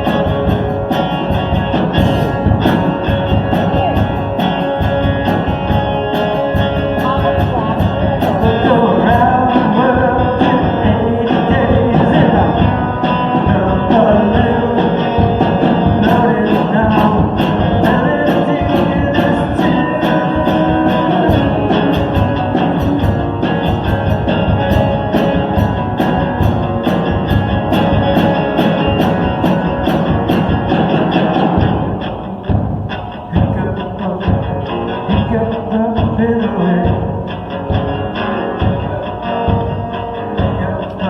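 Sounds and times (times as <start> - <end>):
live guitar song: 0.0 - 41.0
person singing: 2.0 - 25.6, 33.2 - 41.0.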